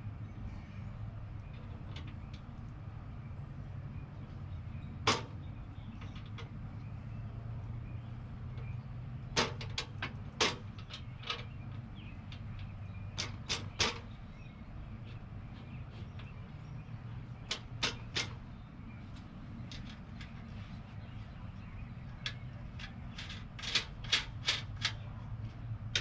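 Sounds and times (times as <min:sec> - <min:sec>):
hard plastic parts clicking: 0:17.4 - 0:18.5, 0:22.2 - 0:25.0.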